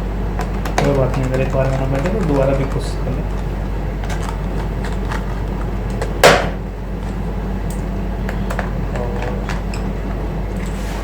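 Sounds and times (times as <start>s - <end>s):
electrical hum: 0.0s - 11.0s
sharp hard snap: 6.2s - 6.6s.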